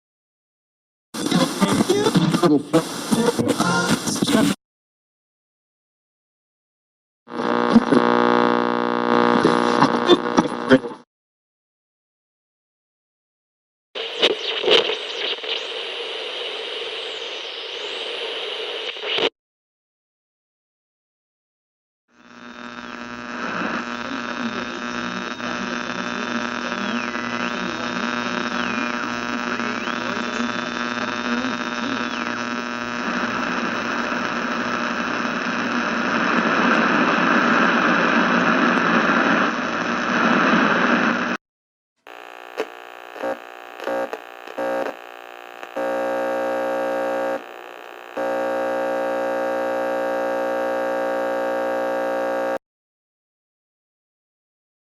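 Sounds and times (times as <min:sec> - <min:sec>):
radio static hiss and hum: 0:01.2 - 0:04.6, 0:07.3 - 0:11.1, 0:14.0 - 0:19.3, 0:22.1 - 0:41.4, 0:42.1 - 0:52.6
steady electrical buzz: 0:07.3 - 0:10.7, 0:22.2 - 0:36.2, 0:42.1 - 0:52.6
high radio whistle: 0:14.0 - 0:19.3, 0:26.4 - 0:33.7
stuttering buzzing interference: 0:22.2 - 0:37.2, 0:42.1 - 0:52.6.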